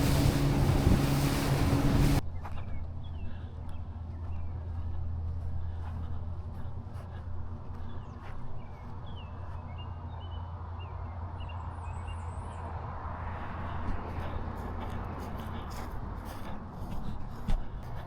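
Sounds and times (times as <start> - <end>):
steady low rumble: 0.0 - 2.2.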